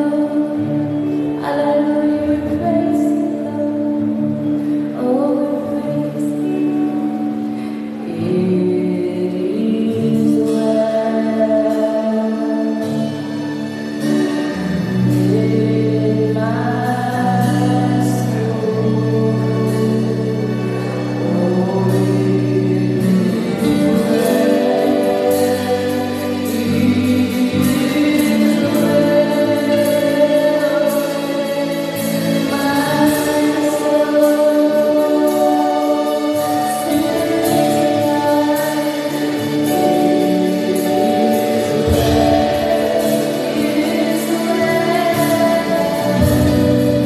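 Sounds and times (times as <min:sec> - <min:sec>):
choir singing worship song: 0:22.2 - 0:47.0.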